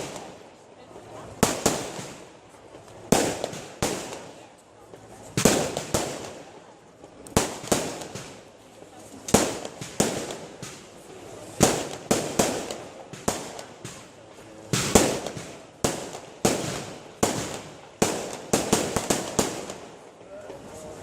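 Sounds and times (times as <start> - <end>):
fireworks shells bursting: 9.2 - 20.1.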